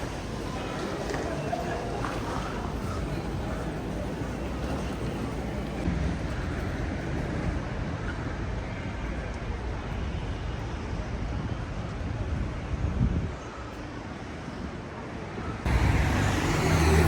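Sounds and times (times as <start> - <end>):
low rumbling vehicle noise: 15.5 - 17.0.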